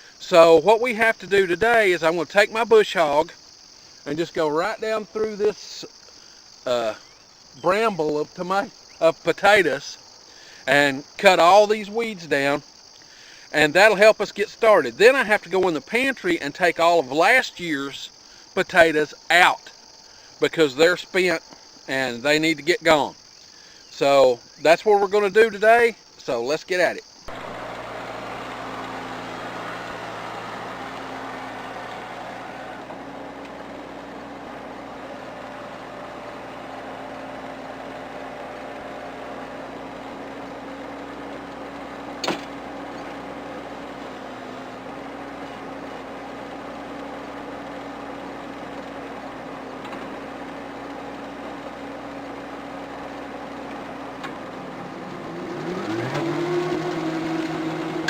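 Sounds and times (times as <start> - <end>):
tractor diesel engine running: 27.3 - 58.0.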